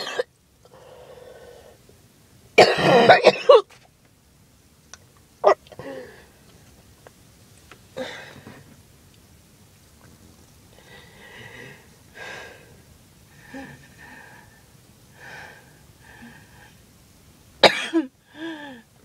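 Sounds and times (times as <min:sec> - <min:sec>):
woman hacking coughs: 0:00.0 - 0:00.3, 0:02.6 - 0:03.7, 0:17.6 - 0:18.1
woman wheezy breathing: 0:05.7 - 0:06.4, 0:08.0 - 0:08.7, 0:10.8 - 0:16.8, 0:18.2 - 0:19.0.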